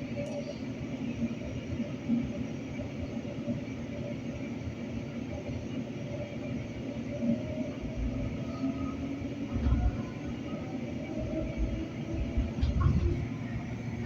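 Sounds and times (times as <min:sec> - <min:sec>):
train wheels rumbling on track: 0:06.1 - 0:14.0.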